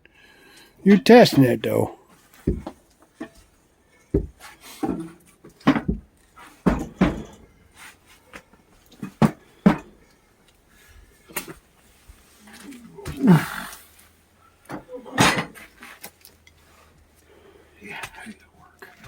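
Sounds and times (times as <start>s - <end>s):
knocks and thumps: 2.4s - 3.4s, 4.1s - 5.1s, 5.7s - 7.4s.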